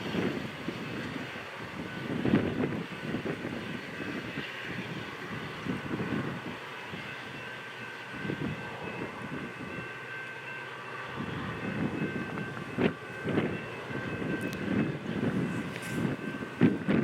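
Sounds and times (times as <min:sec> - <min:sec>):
train high whine: 0:00.0 - 0:17.0
train low rumble: 0:00.0 - 0:17.0.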